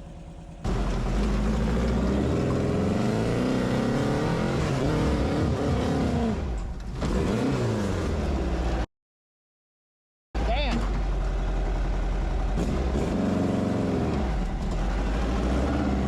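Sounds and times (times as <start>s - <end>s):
engine revving under load: 0.6s - 8.9s, 12.5s - 16.0s.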